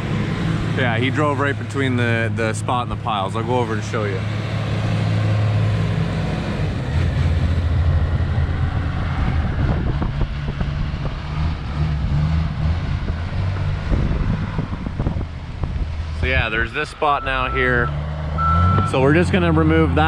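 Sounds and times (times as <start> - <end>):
vehicle engine humming: 0.0 - 20.0
wind noise on microphone: 7.4 - 16.8.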